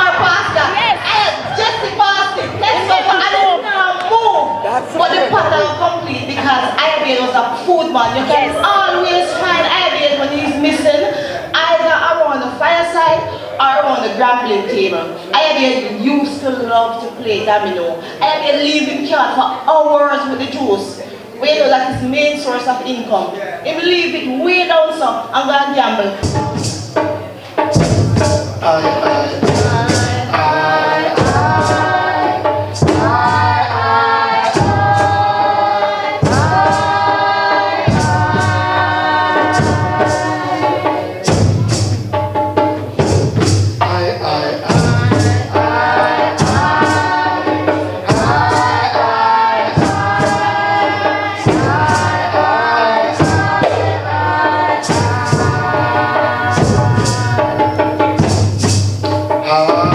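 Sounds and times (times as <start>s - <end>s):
group singing: 0.0s - 14.7s, 25.2s - 59.9s
steady drum beat: 26.0s - 59.9s.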